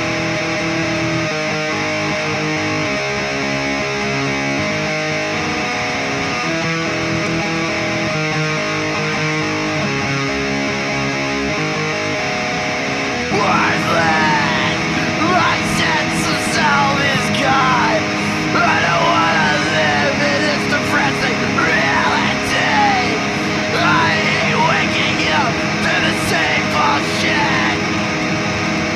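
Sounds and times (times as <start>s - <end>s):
distorted electric guitar riff: 0.0s - 28.9s
heavy rock music: 13.0s - 28.9s.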